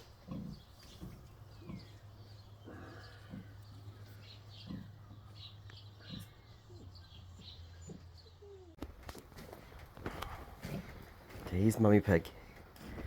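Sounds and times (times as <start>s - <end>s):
pig grunting: 0.0s - 8.7s, 10.2s - 11.2s.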